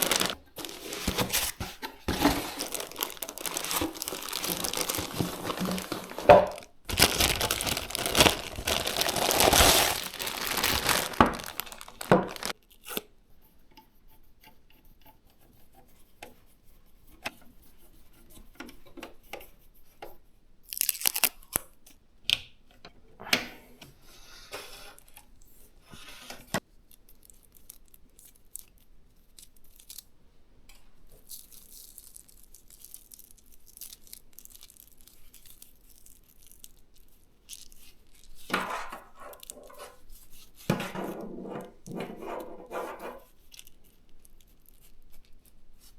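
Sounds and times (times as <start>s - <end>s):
plastic packaging crinkling and tearing: 0.0s - 13.0s, 20.7s - 21.6s, 26.9s - 30.1s, 31.2s - 40.6s.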